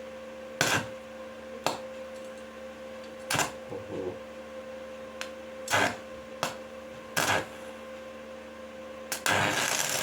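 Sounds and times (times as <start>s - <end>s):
steady hum: 0.0s - 10.0s
welding arc crackling: 0.6s - 0.9s, 5.6s - 6.0s, 7.2s - 7.6s, 9.1s - 10.0s.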